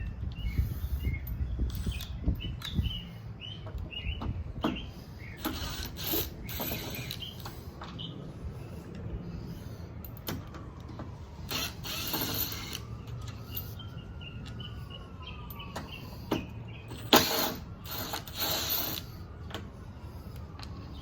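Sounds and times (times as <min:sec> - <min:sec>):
tool ratcheting against metal: 0:01.2 - 0:02.9, 0:04.6 - 0:07.6, 0:11.5 - 0:13.7, 0:16.9 - 0:19.1.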